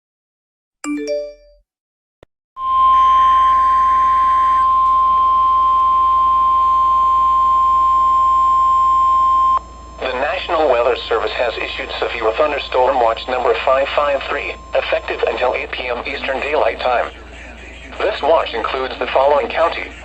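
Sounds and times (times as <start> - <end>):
few-note chime: 0.9 - 1.6, 4.8 - 5.5
low hum: 2.6 - 20.0
radio hiss: 9.6 - 20.0.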